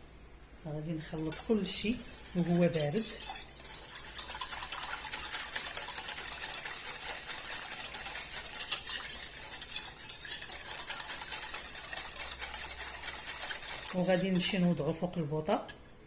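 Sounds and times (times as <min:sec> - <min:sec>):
utensil stirring in saucepan: 0:00.8 - 0:15.9.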